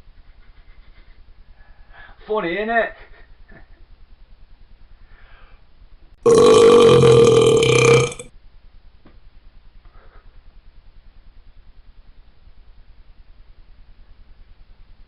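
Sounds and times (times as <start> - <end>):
long loud burp: 6.2 - 8.3.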